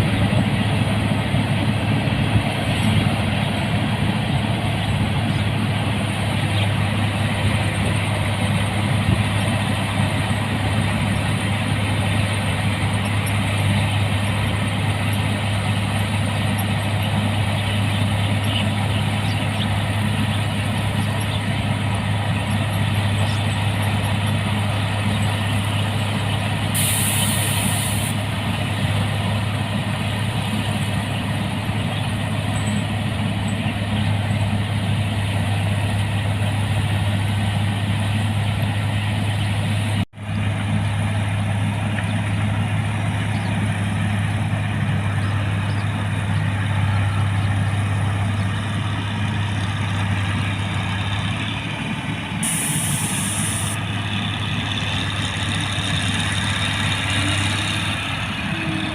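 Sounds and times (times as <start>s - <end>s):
diesel engine humming: 0.0s - 58.9s
short hiss: 26.8s - 28.2s, 52.4s - 53.8s.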